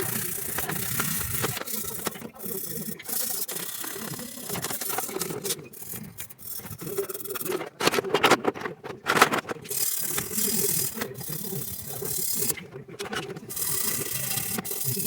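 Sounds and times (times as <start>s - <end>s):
rubbing and scraping: 0.0s - 15.0s.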